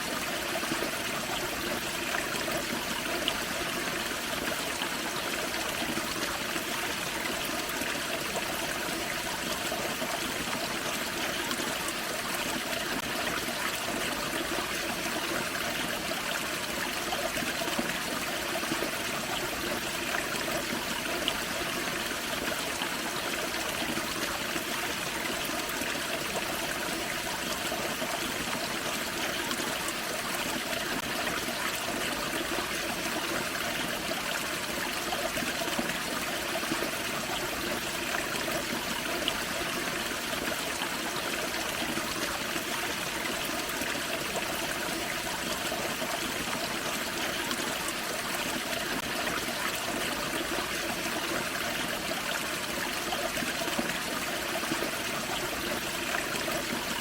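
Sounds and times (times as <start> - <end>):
small waterfall splashing: 0.0 - 57.0.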